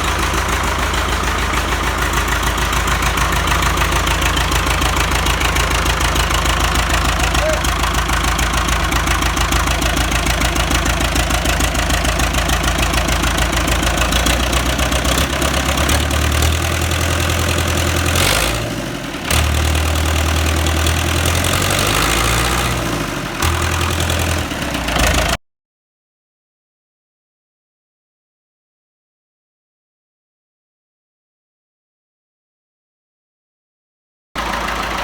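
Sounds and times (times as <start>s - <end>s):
tractor diesel engine running: 0.0s - 25.4s, 34.4s - 35.0s.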